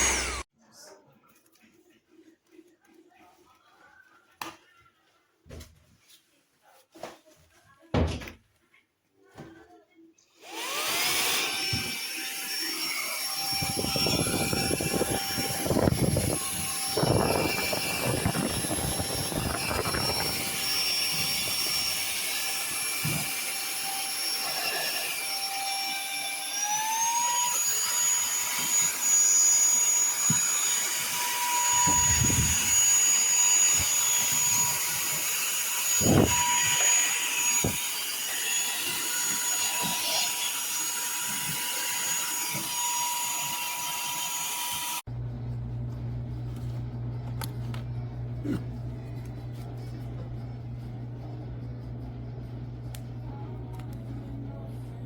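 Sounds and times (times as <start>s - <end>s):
handheld vacuum motor whine: 0.0s - 0.5s, 10.4s - 45.1s.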